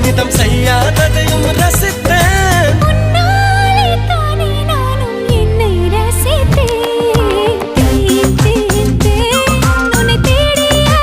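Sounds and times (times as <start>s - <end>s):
steady bass line: 0.0s - 3.8s, 6.2s - 10.9s
film song with sung melody: 0.0s - 11.0s.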